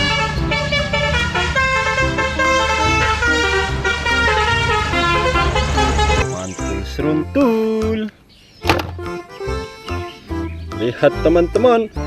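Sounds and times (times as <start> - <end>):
multi-tone air horn tune: 0.0 - 6.2.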